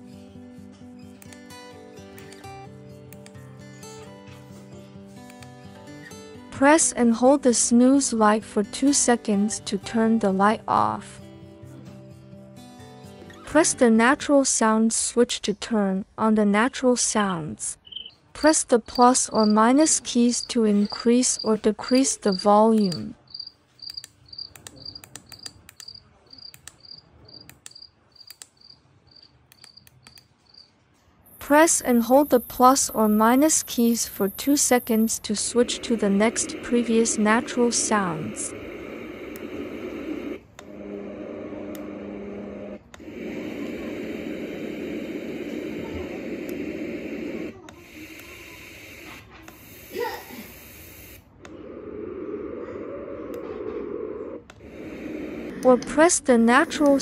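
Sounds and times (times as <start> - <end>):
cricket chirps: 17.8 - 18.2, 22.3 - 29.9, 30.5 - 30.7
sound machine hissing tracks: 18.4 - 23.0, 31.3 - 57.0
sharp clicks: 22.7 - 23.1, 23.8 - 28.6, 29.5 - 30.3.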